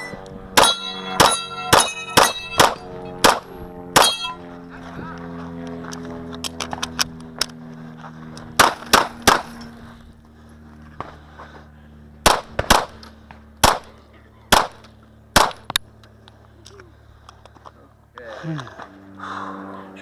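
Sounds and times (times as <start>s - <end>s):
steel plates ringing: 0.0s - 3.2s, 4.0s - 4.4s
pistol shots: 0.6s - 3.4s, 4.0s - 4.3s, 8.6s - 9.5s, 12.2s - 13.0s, 13.6s - 13.9s, 14.5s - 15.7s.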